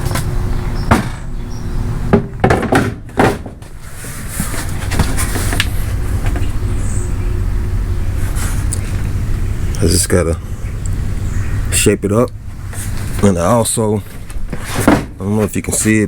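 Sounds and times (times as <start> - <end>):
bumper knocking against car: 0.9 - 1.3, 2.1 - 3.7
steady low rumble: 3.4 - 16.0.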